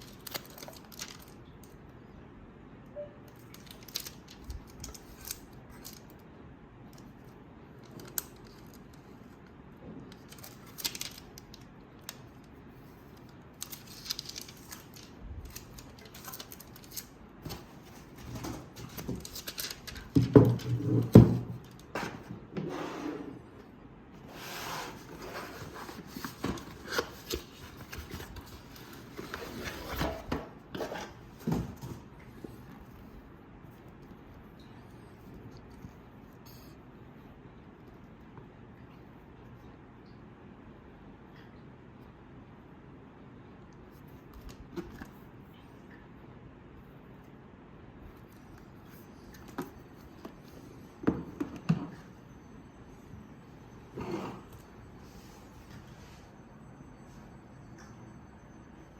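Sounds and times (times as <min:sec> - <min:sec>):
packaging rustling and crinkling: 0:12.4 - 0:22.2, 0:24.9 - 0:32.1.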